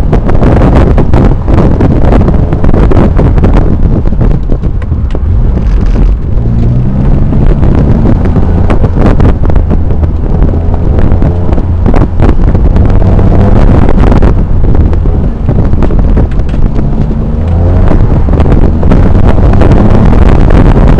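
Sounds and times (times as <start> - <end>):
car engine revving: 0.0 - 20.9
wind buffeting microphone: 0.0 - 20.9.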